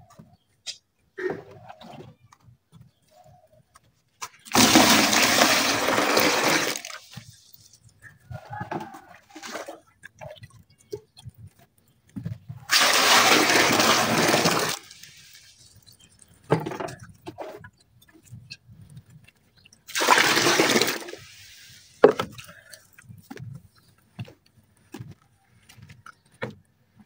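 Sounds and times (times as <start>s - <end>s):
water splashing into bucket: 4.5s - 7.5s, 9.2s - 9.9s, 12.7s - 17.0s, 19.9s - 22.8s.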